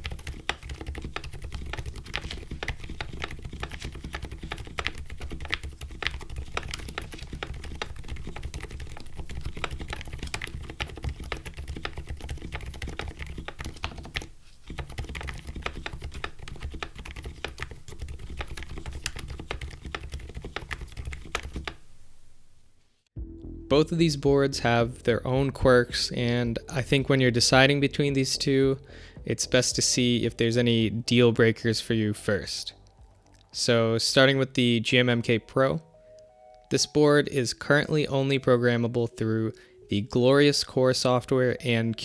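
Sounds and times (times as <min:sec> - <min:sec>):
muted mechanical keyboard typing: 0:00.0 - 0:21.9.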